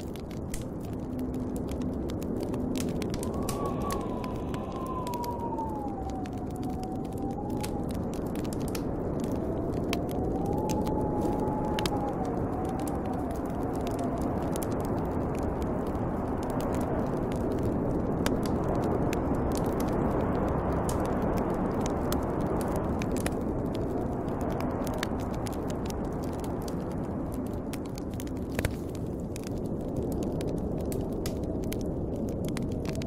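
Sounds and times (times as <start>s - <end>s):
wind blowing with faint whistle: 0.0s - 33.0s
wood fire crackling and popping: 0.0s - 33.0s.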